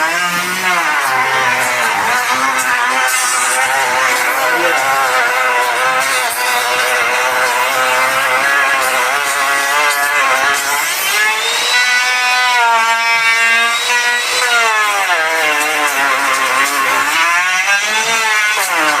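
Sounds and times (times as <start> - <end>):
power tool motor whining cutting wood: 0.0 - 19.0.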